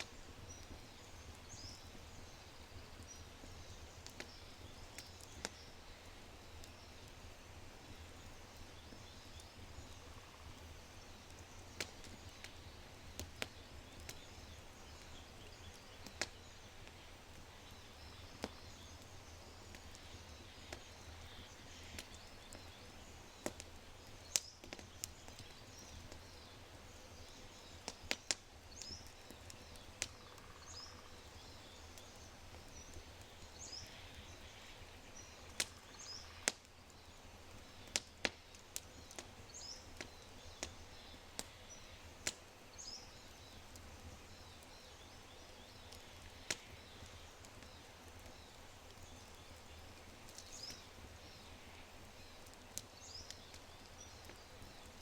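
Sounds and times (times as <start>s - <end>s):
fire crackling and popping: 0.0s - 55.0s.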